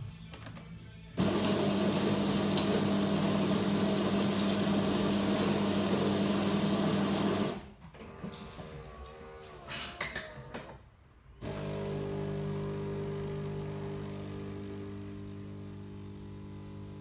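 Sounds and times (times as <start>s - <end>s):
coffee grinder grinding beans: 1.2s - 7.6s, 11.4s - 17.0s.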